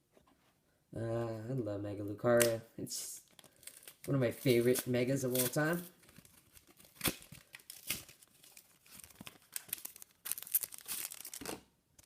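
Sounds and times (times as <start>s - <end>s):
foil wrapper crinkling: 3.3s - 12.0s
foil wrapper tearing: 3.4s - 11.6s.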